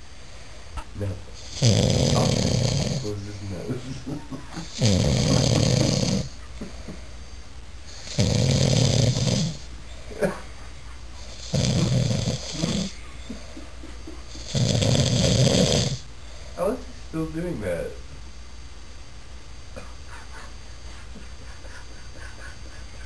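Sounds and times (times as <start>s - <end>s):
loud snores: 1.4s - 3.1s, 4.6s - 6.4s, 7.9s - 9.7s, 11.3s - 13.0s, 14.4s - 16.1s.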